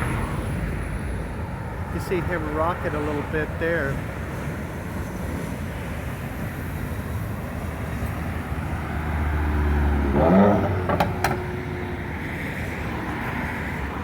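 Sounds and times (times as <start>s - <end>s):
gusty wind buffeting microphone: 0.0s - 14.0s
sharp knocks: 10.9s - 11.5s.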